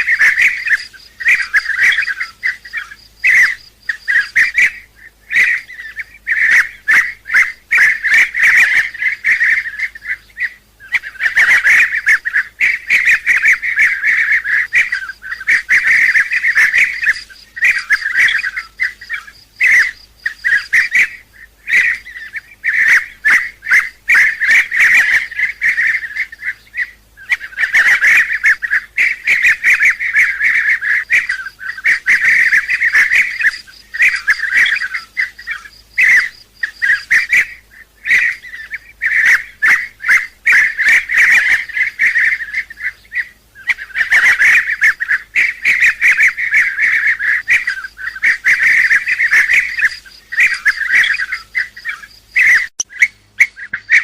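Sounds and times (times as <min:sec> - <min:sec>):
birds trilling calls: 0:00.0 - 0:54.0.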